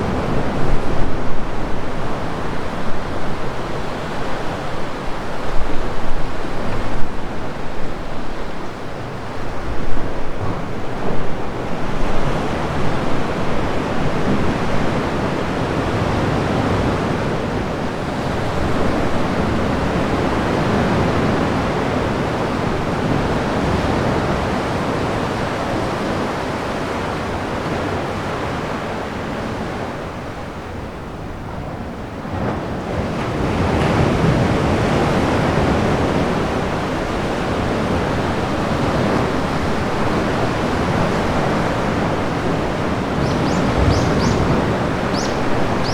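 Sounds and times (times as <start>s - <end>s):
waves rushing into sea cave: 32.3s - 45.9s.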